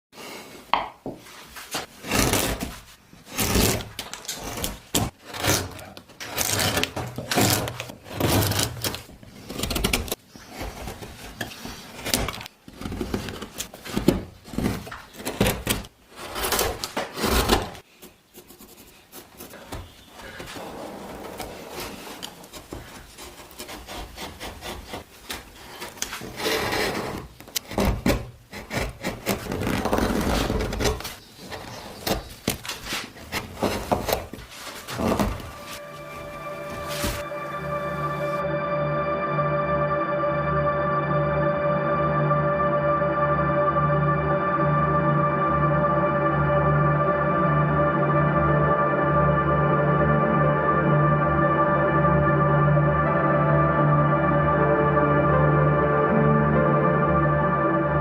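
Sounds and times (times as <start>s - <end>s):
hand tools scraping wood: 1.7s - 35.8s.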